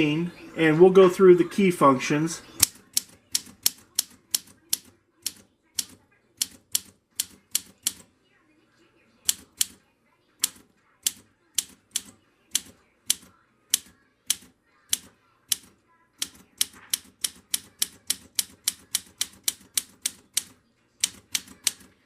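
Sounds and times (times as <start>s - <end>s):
manual typewriter typing: 10.4s - 21.9s.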